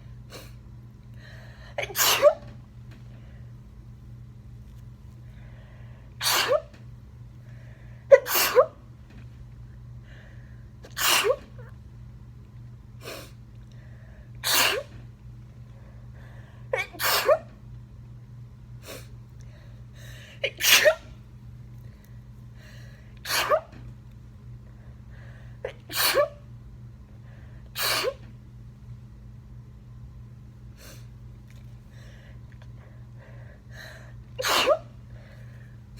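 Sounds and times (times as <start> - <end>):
person sneezing: 1.8 - 2.5, 6.2 - 6.7, 8.1 - 8.8, 10.9 - 11.7, 14.4 - 15.0, 16.8 - 17.5, 20.4 - 21.1, 23.2 - 23.8, 25.7 - 26.4, 27.8 - 28.2, 34.4 - 34.9.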